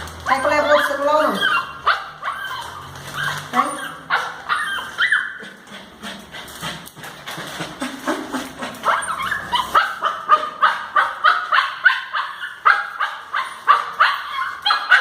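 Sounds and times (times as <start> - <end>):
dog whining and yelping: 0.2 - 5.7, 8.3 - 15.0.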